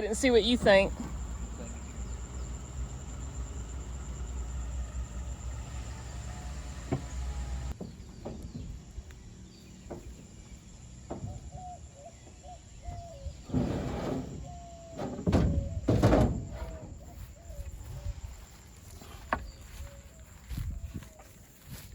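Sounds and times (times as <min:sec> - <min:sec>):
high insect-like whine: 0:16.1 - 0:21.9
wind on microphone: 0:19.5 - 0:21.9.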